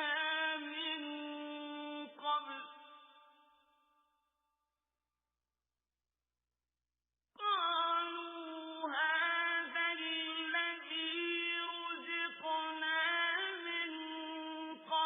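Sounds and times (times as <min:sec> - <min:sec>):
man reciting in melodic chant: 0:00.0 - 0:03.0, 0:07.4 - 0:15.0.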